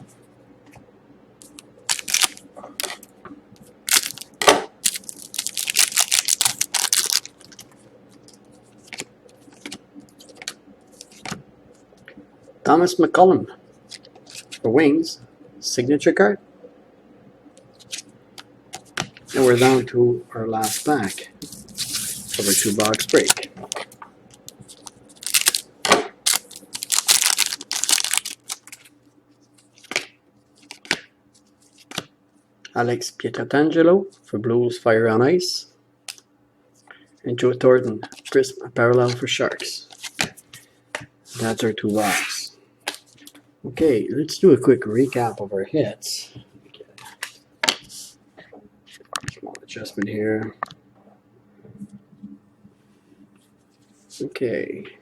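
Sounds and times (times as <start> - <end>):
trading cards rustling and clicking: 1.4 - 3.0, 3.9 - 11.4, 20.6 - 25.7, 26.3 - 28.9
foil wrapper tearing and crinkling: 1.9 - 2.4, 3.9 - 7.6, 21.7 - 23.8, 24.7 - 28.8.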